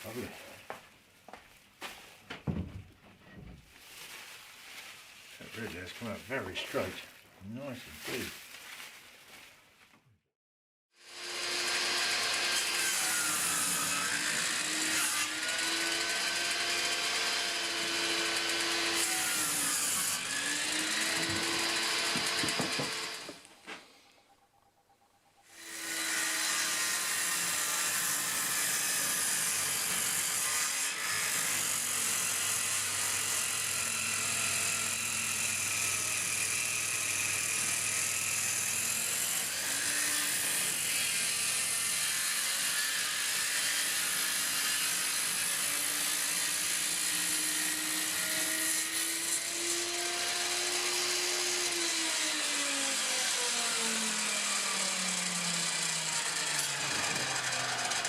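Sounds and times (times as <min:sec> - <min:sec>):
electric power tool motor: 0:11.0 - 0:23.5, 0:31.2 - 0:58.0.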